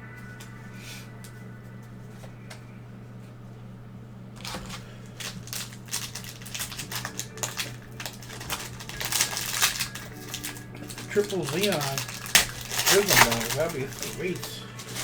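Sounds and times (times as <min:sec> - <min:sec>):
low electrical hum: 0:00.0 - 0:15.0
wrapper crinkling: 0:04.4 - 0:15.0.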